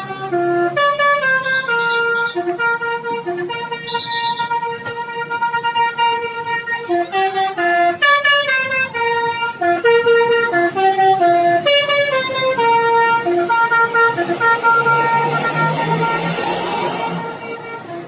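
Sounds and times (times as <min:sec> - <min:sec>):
musical bus horn: 0:00.0 - 0:18.0.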